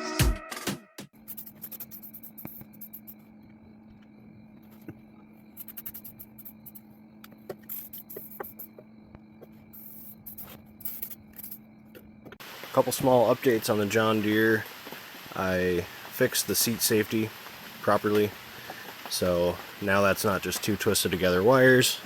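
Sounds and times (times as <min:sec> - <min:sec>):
faint low hum: 0:01.2 - 0:22.0
soft clicks taps and scrapes: 0:03.9 - 0:12.4.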